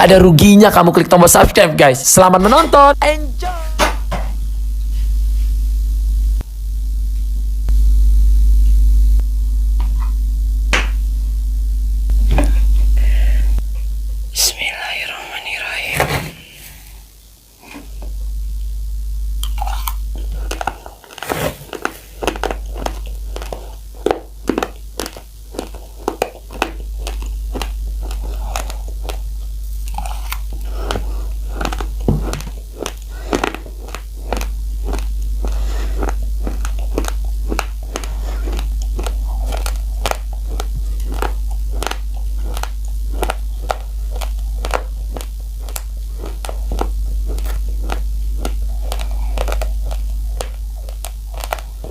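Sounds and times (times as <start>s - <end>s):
steady low hum: 0.0s - 51.9s
chewing dry rice crunches: 17.5s - 51.9s.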